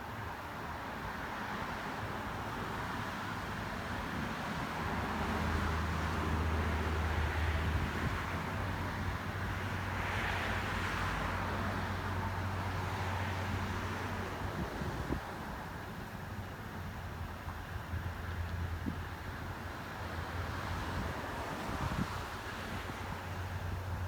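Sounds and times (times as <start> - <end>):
vehicle rumble with road noise: 0.0 - 24.0.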